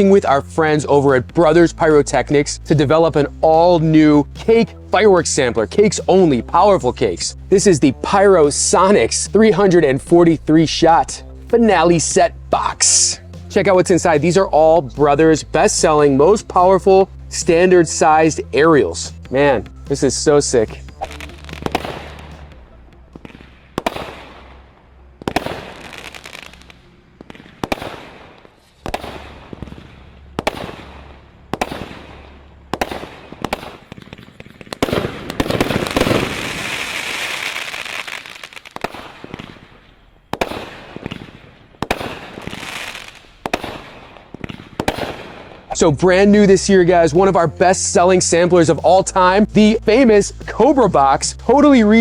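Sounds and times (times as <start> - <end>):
firework booms: 21.0 - 45.8
rapid firework crackling: 21.0 - 45.8.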